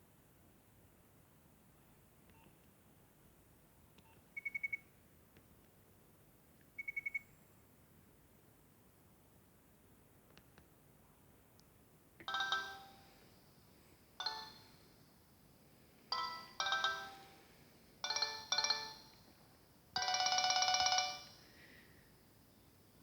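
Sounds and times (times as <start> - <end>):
mobile phone ringtone melody: 12.3 - 13.2, 14.2 - 14.8, 16.1 - 19.2, 20.0 - 21.5.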